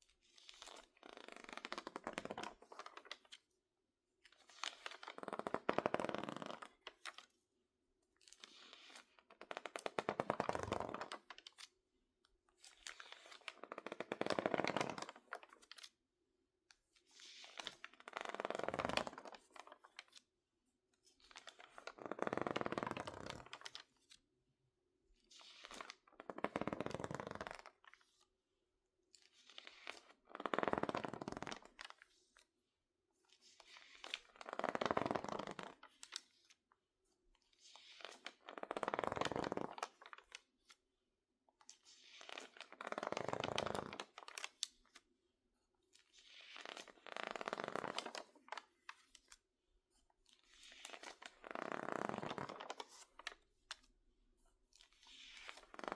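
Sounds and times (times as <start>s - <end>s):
magazine pages crinkling: 50.4s - 53.8s.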